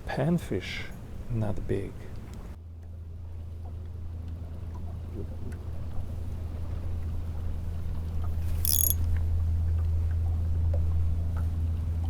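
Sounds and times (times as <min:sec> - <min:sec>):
high-pitched chirp: 0:08.6 - 0:09.0.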